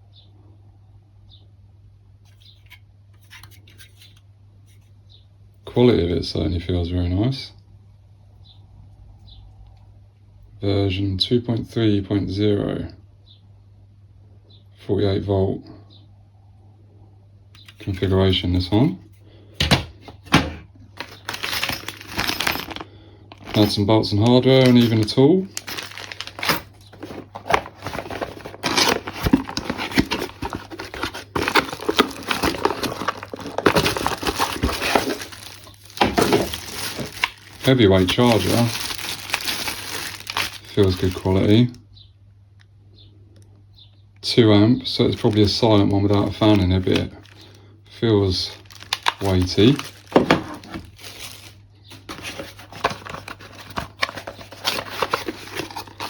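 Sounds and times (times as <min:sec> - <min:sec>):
plastic packaging crinkling: 0:21.0 - 0:41.7, 0:45.0 - 0:47.6, 0:48.2 - 0:56.0.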